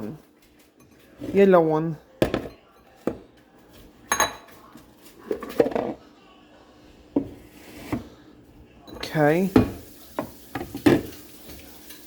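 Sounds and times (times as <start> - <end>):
bowls knocking and clinking: 2.2 - 6.0, 8.8 - 12.0.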